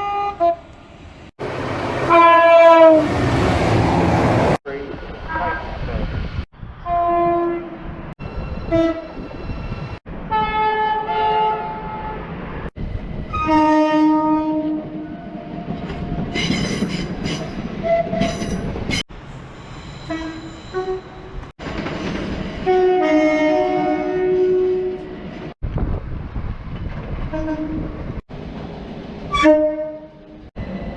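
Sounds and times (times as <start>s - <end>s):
train horns: 0.0s - 0.6s, 1.5s - 4.6s, 6.8s - 7.9s, 8.6s - 9.2s, 10.3s - 12.3s, 13.3s - 15.1s, 22.6s - 25.2s, 29.3s - 30.3s
train running noise: 0.6s - 6.8s, 14.7s - 24.0s.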